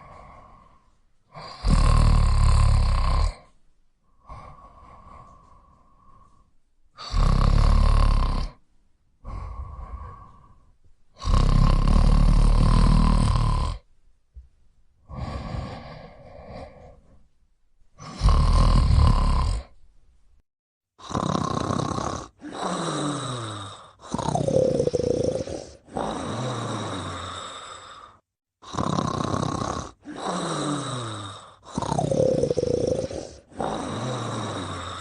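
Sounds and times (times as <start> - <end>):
quiet breaths: 0.0 - 2.0, 2.7 - 7.4, 8.4 - 13.1, 15.0 - 18.3, 22.2 - 35.0
person snoring: 0.0 - 8.6, 9.2 - 13.9, 15.0 - 17.2, 18.0 - 19.8, 21.0 - 35.0.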